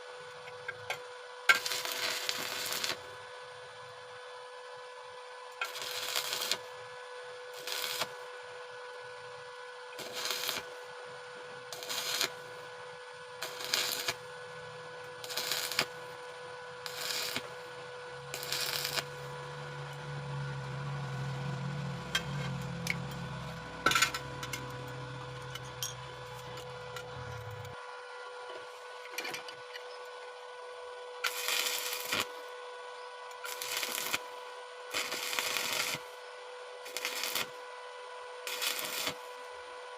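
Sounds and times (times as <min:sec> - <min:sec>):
welding arc bursts: 0:01.5 - 0:03.1, 0:05.6 - 0:06.7, 0:07.5 - 0:08.2, 0:10.0 - 0:10.8, 0:11.7 - 0:12.7, 0:13.4 - 0:14.3, 0:15.2 - 0:27.8, 0:31.2 - 0:32.4, 0:33.4 - 0:36.2, 0:36.8 - 0:37.6, 0:38.4 - 0:39.3
steady hum: 0:05.6 - 0:36.2
low drone: 0:17.4 - 0:27.8.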